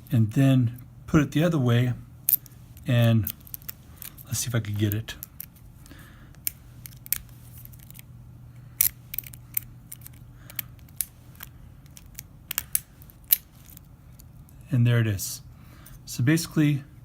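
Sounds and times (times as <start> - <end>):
faint low hum: 0.0 - 17.0
lock pick clicking and scraping: 6.3 - 8.1, 8.8 - 14.5.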